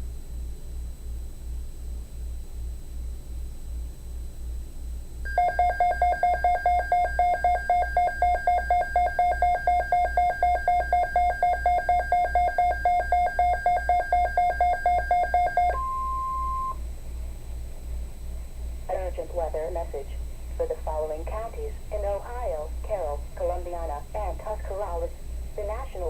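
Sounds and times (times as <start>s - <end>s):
steady beep: 5.3s - 16.8s.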